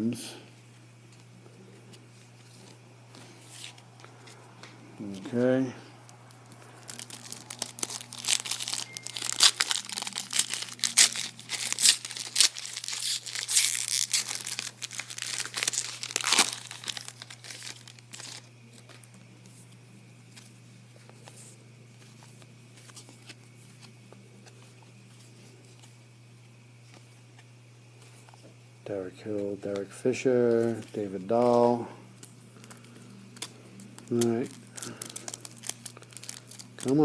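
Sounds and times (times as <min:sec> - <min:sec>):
cards rustling: 0:01.1 - 0:25.9, 0:29.2 - 0:37.0
wrapper tearing and crinkling: 0:06.1 - 0:19.1, 0:32.6 - 0:37.0.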